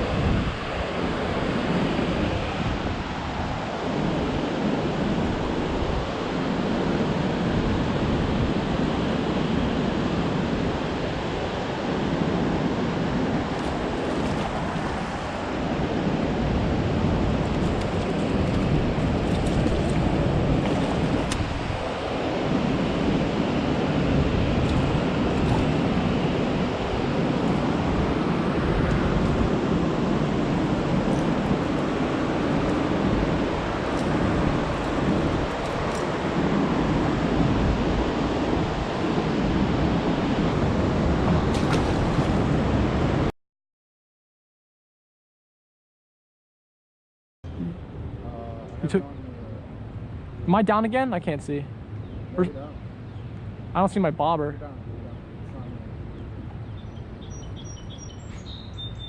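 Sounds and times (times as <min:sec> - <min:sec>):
wind buffeting microphone: 0:00.0 - 0:43.3
fast-flowing floodwater: 0:00.1 - 0:43.3.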